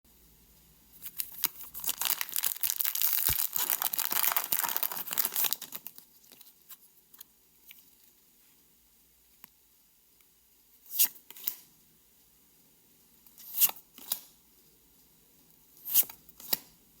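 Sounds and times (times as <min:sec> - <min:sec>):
foil wrapper tearing: 0:01.0 - 0:06.0
wrapper and cards rustling: 0:01.0 - 0:06.8.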